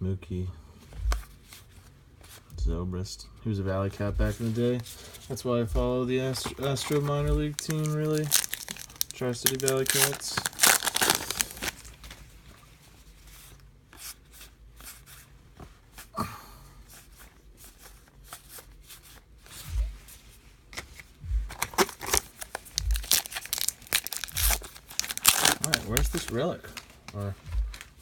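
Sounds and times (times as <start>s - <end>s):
soft low bumps: 0.8s - 1.4s, 2.5s - 9.6s, 19.6s - 20.2s, 21.2s - 21.7s, 22.8s - 23.2s, 27.3s - 28.0s.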